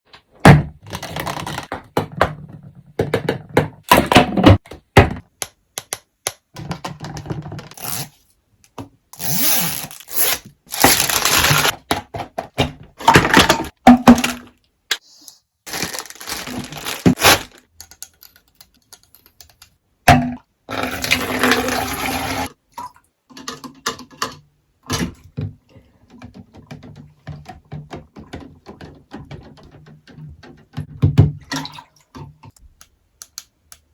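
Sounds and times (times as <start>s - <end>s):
plastic and cardboard rustling tearing: 9.2s - 11.8s, 15.7s - 17.7s.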